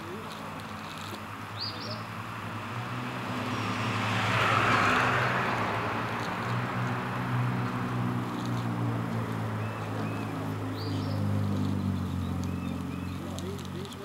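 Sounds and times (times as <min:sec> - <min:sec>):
vehicle passing by: 0:02.1 - 0:14.0.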